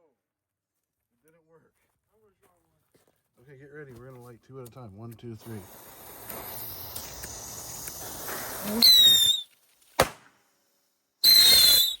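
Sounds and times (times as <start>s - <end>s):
fuse hissing: 5.4s - 9.4s, 11.2s - 12.0s
rocket whistling: 6.2s - 10.2s, 11.2s - 12.0s
sharp pop: 10.0s - 10.4s.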